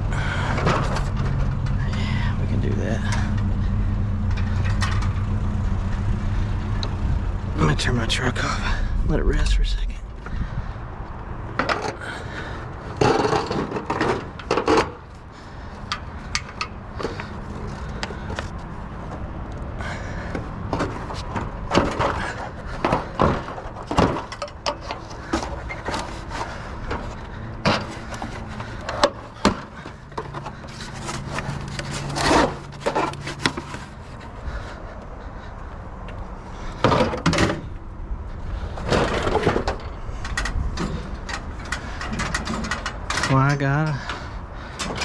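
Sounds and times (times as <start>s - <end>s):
scrap metal knocks and clunks: 0.3s - 1.8s, 11.5s - 15.1s, 20.0s - 34.8s, 36.6s - 45.0s
scraping and rubbing: 24.9s - 34.8s.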